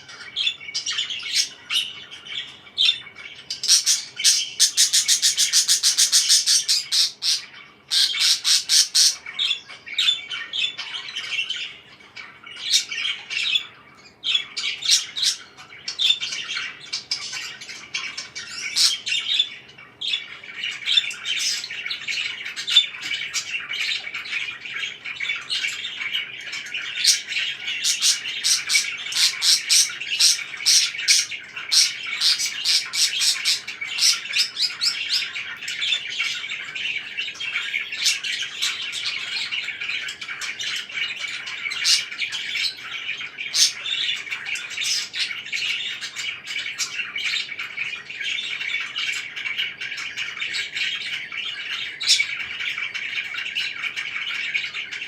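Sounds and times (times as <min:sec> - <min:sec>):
parakeets chirping and chattering: 0:00.0 - 0:55.0.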